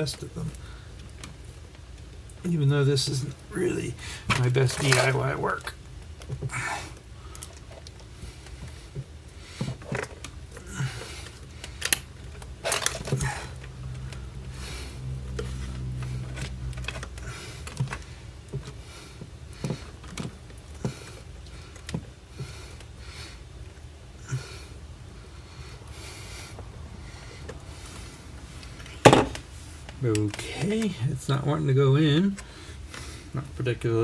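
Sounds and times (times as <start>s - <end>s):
steady low hum: 0.0s - 34.0s
tools and small parts clicking: 11.3s - 14.1s.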